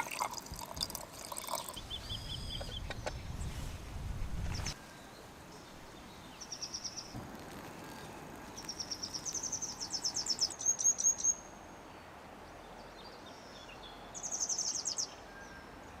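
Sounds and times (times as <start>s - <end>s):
faint outdoor hiss: 0.0s - 16.0s
songbird trilling: 1.7s - 3.3s.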